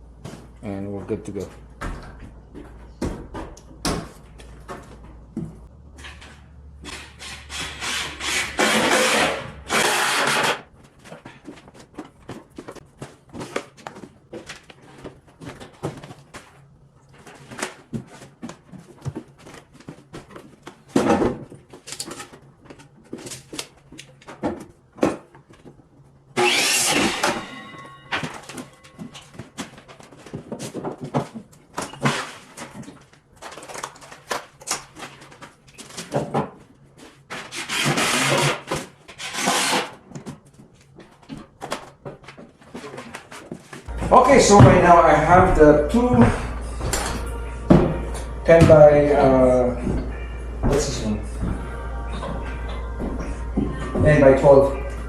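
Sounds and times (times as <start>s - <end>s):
loud construction noise: 6.9s - 10.6s, 26.4s - 28.3s
tools and lumber clattering: 26.4s - 54.9s.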